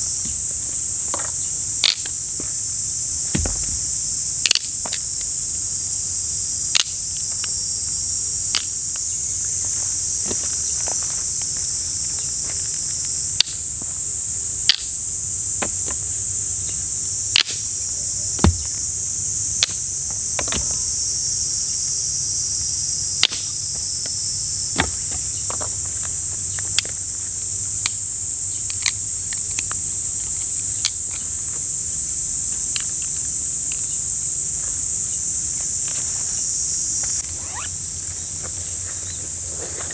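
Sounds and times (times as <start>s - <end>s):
high-pitched insect chorus: 0.0s - 39.9s
sharp snaps and clicks: 1.8s - 2.2s, 4.4s - 5.3s, 6.7s - 7.0s, 8.5s - 8.8s, 13.4s - 13.6s, 14.7s - 14.9s, 17.3s - 17.7s, 23.2s - 23.7s, 28.7s - 31.2s.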